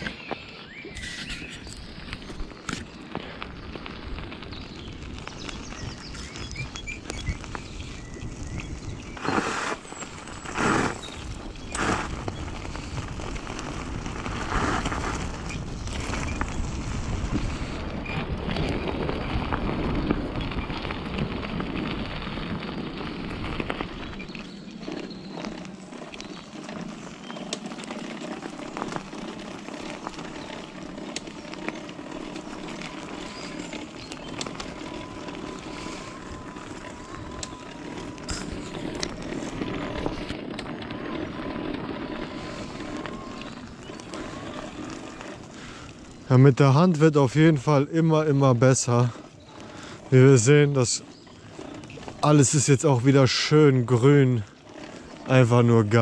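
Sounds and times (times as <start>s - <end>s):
faint electric motor whine: 0.0s - 46.3s
bicycle tyre noise on track: 0.0s - 56.0s.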